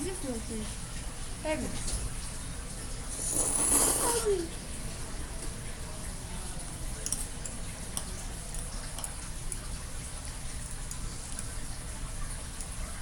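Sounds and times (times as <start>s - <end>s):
eating mouth sounds: 3.1s - 4.6s.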